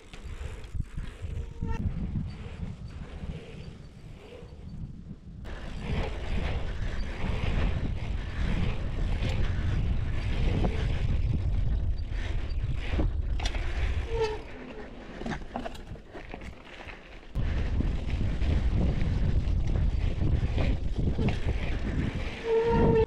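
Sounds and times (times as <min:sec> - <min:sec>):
wind buffeting microphone: 0:00.0 - 0:16.1, 0:17.3 - 0:23.0
bike clicks and rattles: 0:00.0 - 0:23.0
bike tyre rumble: 0:00.0 - 0:23.0.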